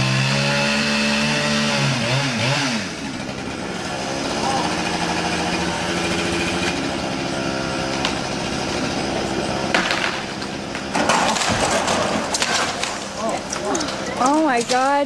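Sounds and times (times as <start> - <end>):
chainsaw engine running: 0.0 - 15.0
wood cracking and crashing: 7.8 - 15.0.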